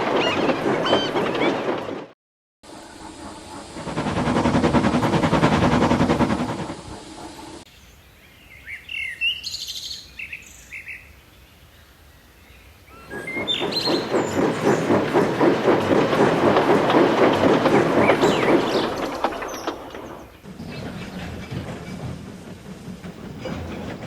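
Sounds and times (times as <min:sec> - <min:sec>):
train passing rhythm: 0:00.0 - 0:07.7, 0:12.9 - 0:24.0
birds chirping: 0:11.7 - 0:24.0.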